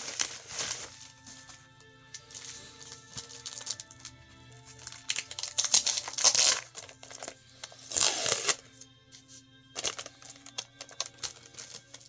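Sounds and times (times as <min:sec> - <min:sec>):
plastic bags crinkling: 0:00.0 - 0:08.8, 0:09.8 - 0:12.0.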